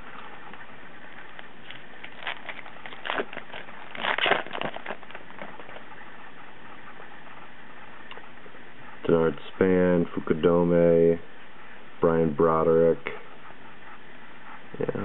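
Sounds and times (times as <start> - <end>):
wrapper crinkling while torn open: 1.6 - 5.5.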